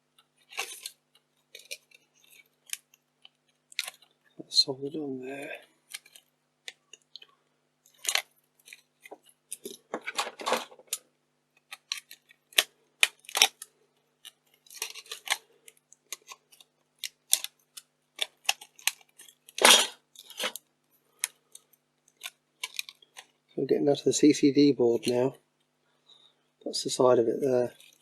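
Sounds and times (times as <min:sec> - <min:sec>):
tools scraping: 0:19.2 - 0:20.6.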